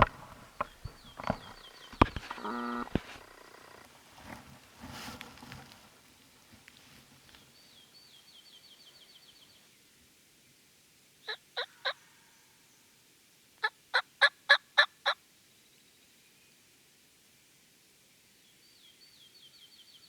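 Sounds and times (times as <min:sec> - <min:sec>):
songbird trilling: 0:00.0 - 0:03.8
turkey yelping: 0:13.9 - 0:15.2.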